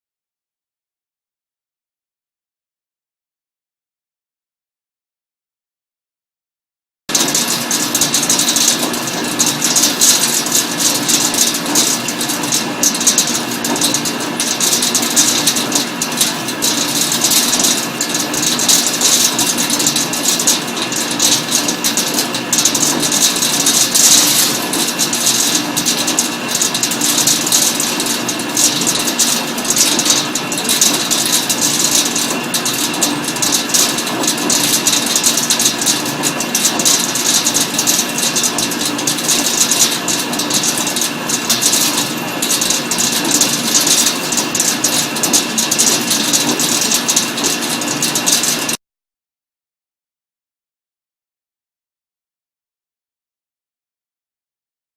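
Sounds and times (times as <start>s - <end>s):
machine hum with fixed tones: 7.1s - 48.8s.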